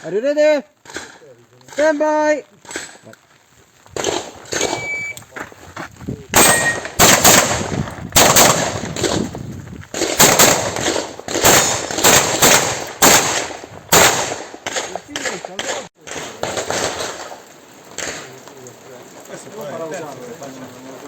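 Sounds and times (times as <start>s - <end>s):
shot timer beep: 4.7s - 5.2s, 6.4s - 6.9s
handgun shots: 6.4s - 7.6s.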